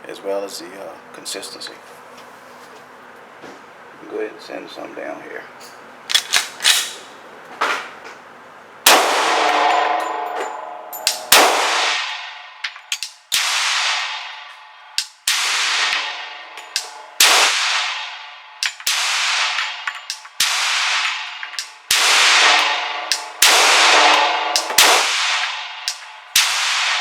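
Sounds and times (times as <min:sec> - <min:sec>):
pistol shots with metallic ringing: 0:08.9 - 0:27.0.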